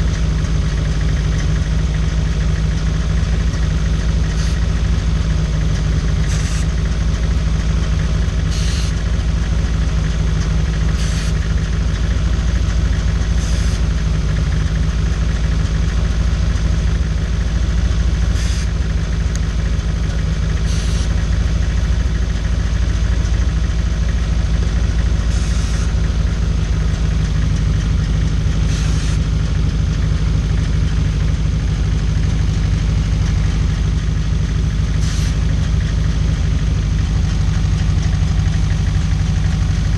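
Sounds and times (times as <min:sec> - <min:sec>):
car engine idling: 0:00.0 - 0:39.9
spray can hissing: 0:08.5 - 0:08.9, 0:20.7 - 0:21.1, 0:25.3 - 0:25.9.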